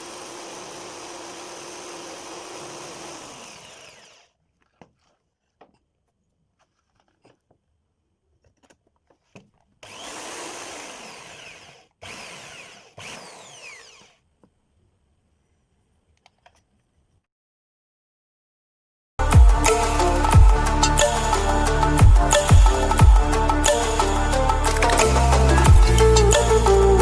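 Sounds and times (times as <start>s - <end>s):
power tool running: 0.0s - 4.4s, 9.8s - 14.2s.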